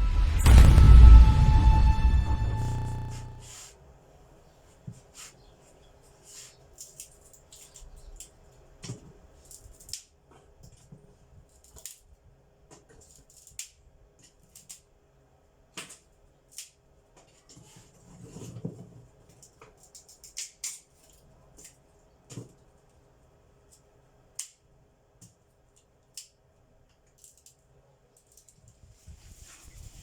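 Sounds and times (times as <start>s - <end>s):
low rubbing sound: 0.0s - 3.6s.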